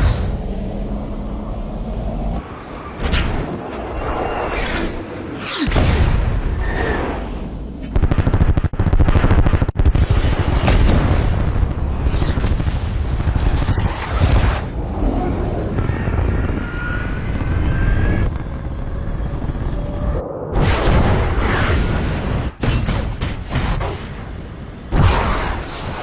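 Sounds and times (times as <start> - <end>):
heavy rumble: 0.0 - 26.0
booms: 5.4 - 26.0
rapid gunfire: 7.9 - 14.7.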